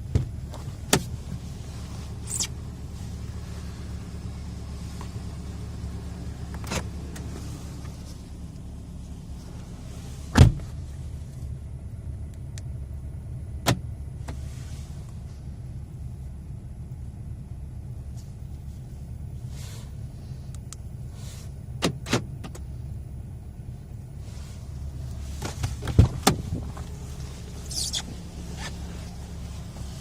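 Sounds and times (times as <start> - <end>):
steady low hum: 0.0 - 30.0
car door locks clunking: 25.4 - 27.0.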